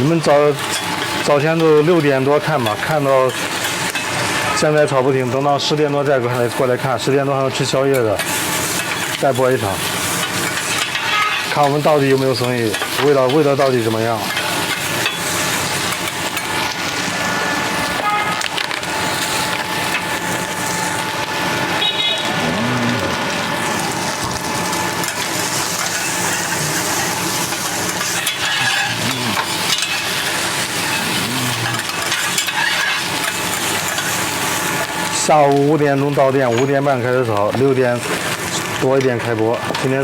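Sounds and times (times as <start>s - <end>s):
rice sizzling on hot plate: 0.0s - 40.0s
metal spatulas scraping: 25.1s - 33.3s.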